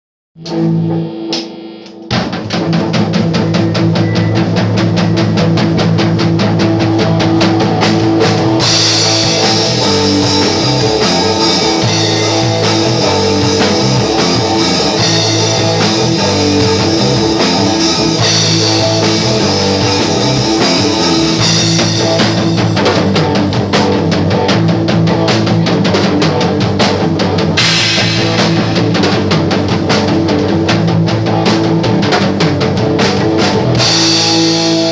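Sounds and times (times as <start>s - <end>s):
bass guitar: 0.4s - 34.9s
drum kit beat: 0.4s - 34.9s
electric guitar: 0.4s - 34.9s
cymbals: 8.6s - 22.8s, 27.6s - 29.6s.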